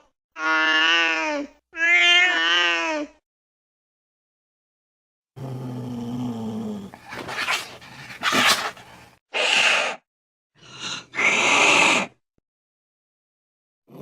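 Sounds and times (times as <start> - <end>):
cat growling: 5.4 - 9.0
cat hissing and spitting: 6.9 - 10.0.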